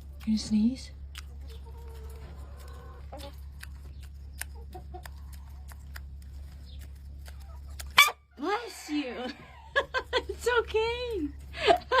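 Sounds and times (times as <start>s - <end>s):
steady low hum: 0.0s - 12.0s
chicken clucking softly: 1.2s - 8.0s.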